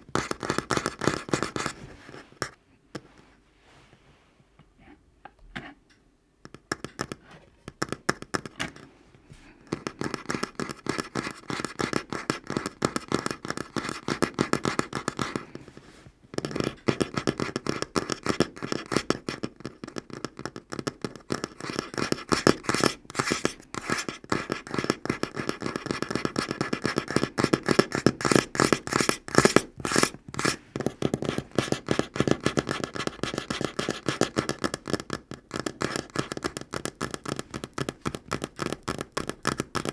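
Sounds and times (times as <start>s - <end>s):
fingernails tapping on a tabletop: 6.4s - 8.9s, 9.6s - 15.4s, 16.3s - 39.9s.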